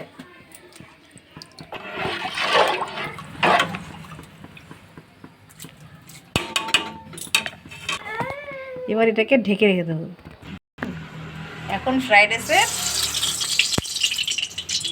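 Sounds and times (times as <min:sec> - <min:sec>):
water sloshing in pot: 0:00.5 - 0:08.0, 0:12.5 - 0:14.9.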